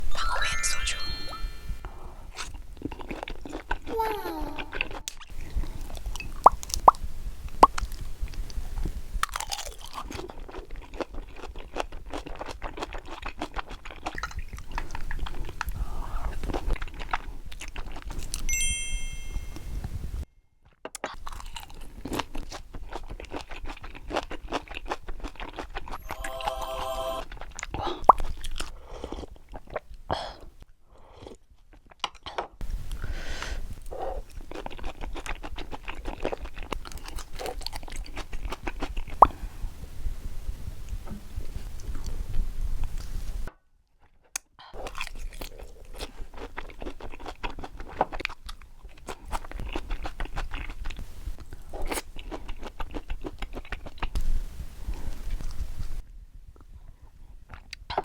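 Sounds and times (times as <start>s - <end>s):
close chewing and biting: 2.3s - 18.5s, 20.8s - 26.0s, 27.3s - 32.6s, 33.7s - 39.4s, 44.0s - 54.3s.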